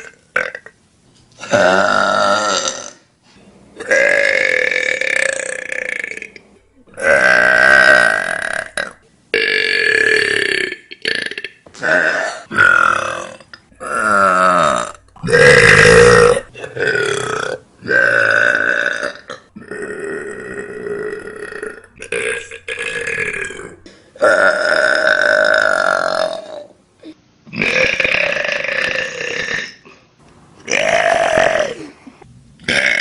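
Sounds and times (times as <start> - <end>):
person burping loudly: 0.0 - 0.8, 1.4 - 3.1, 3.8 - 26.7, 27.5 - 29.9, 30.7 - 32.0, 32.6 - 33.0.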